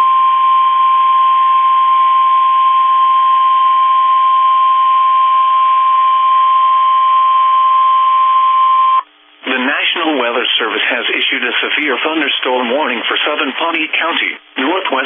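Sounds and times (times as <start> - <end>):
radio static hiss: 9.4 - 15.0.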